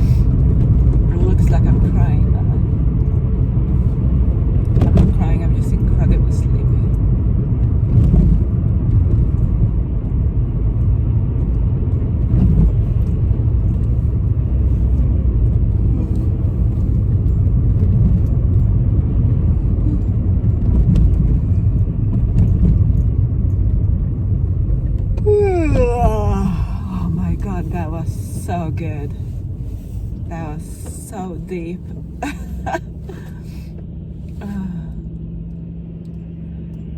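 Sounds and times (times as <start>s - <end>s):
car road and engine rumble: 0.0s - 36.9s
person yawning: 25.2s - 27.2s.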